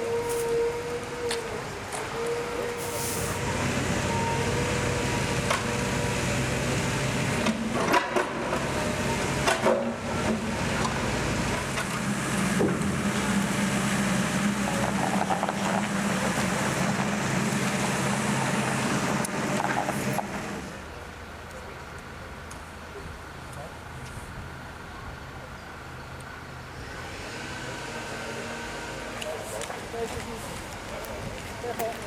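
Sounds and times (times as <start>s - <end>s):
vehicle engine running: 2.8s - 22.3s.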